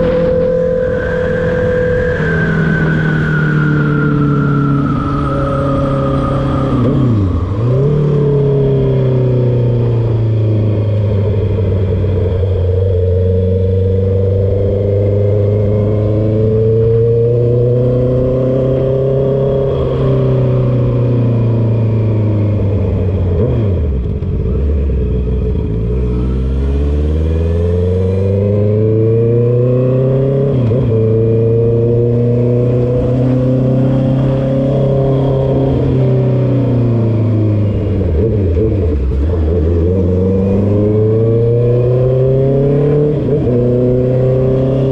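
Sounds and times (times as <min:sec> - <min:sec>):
motorcycle engine revving: 0:00.0 - 0:44.9.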